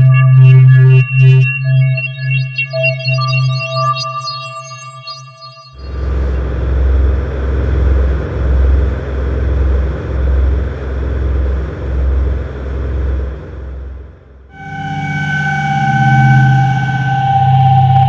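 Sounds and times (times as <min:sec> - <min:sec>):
noisy hiss: 0:05.8 - 0:18.0
pulsing deep rumble: 0:05.8 - 0:18.0.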